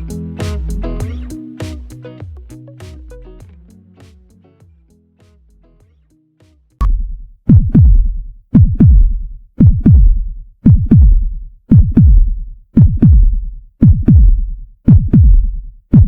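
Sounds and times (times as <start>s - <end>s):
deep bass drum sliding down: 6.8s - 16.0s.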